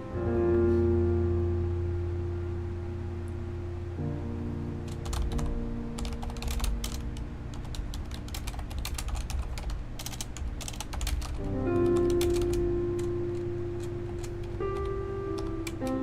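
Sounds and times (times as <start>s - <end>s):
mechanical keyboard key clacks: 4.9s - 16.0s.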